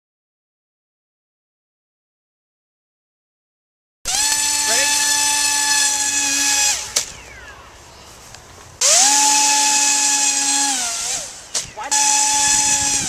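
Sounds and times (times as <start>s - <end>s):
electric motor propeller whine: 4.1s - 7.6s, 8.8s - 13.0s.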